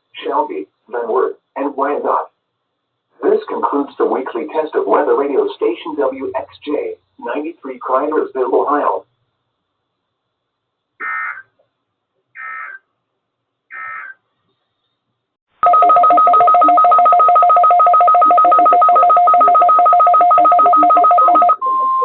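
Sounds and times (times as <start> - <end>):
digital data bursts: 15.6 - 22.0
steady warning alarm tone: 15.6 - 22.0
two-pitch tone: 15.6 - 22.0.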